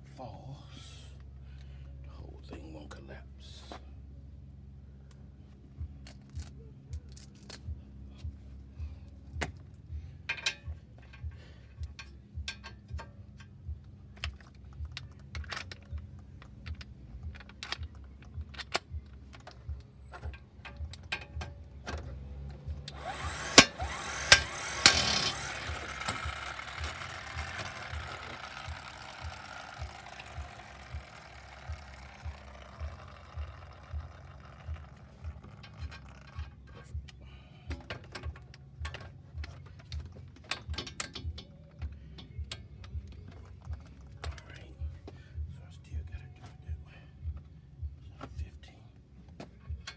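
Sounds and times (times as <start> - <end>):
low hum: 3.2 - 49.9
mechanical noise with sharp bangs: 14.2 - 37.1.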